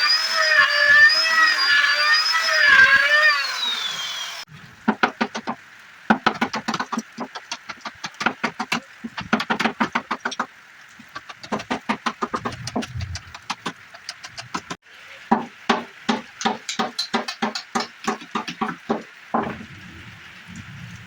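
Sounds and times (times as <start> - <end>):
hand tool knocking on wood: 4.9 - 19.6.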